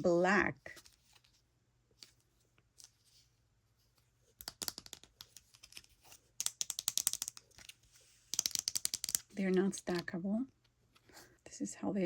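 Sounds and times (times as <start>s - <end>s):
plastic pieces clicking and crinkling: 4.4s - 10.1s.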